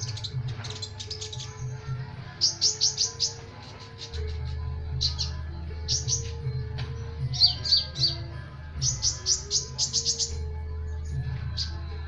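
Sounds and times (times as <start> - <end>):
bird chirping: 0.0 - 1.8, 7.3 - 10.4.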